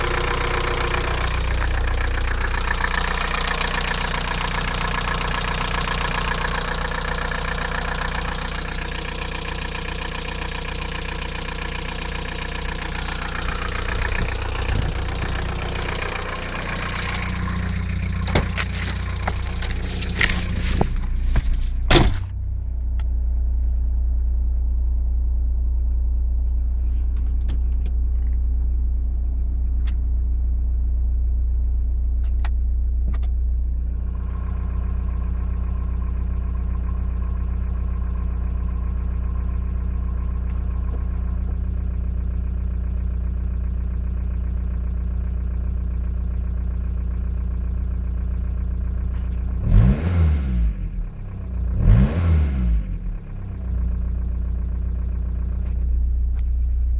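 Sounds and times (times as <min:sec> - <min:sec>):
engine revving: 0:00.0 - 0:22.3, 0:49.2 - 0:55.8
diesel engine idling: 0:00.0 - 0:56.9
engine ticking: 0:00.0 - 0:56.9.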